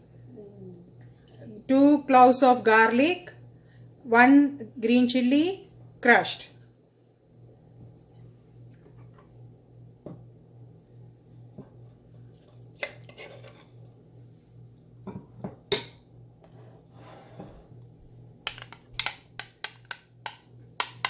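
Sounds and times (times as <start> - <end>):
steady low hum: 0.0 - 21.0
spoon scraping a bowl: 12.4 - 13.9.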